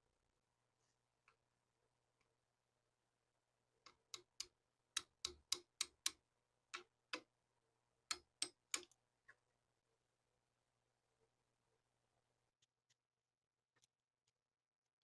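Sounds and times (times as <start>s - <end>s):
small parts clicking and tapping: 3.8s - 7.3s, 8.1s - 9.4s.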